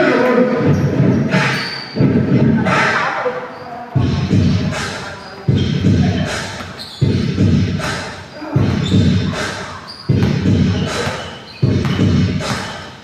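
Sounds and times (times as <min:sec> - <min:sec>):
music with heavy bass beat: 0:04.0 - 0:11.0, 0:11.6 - 0:12.7.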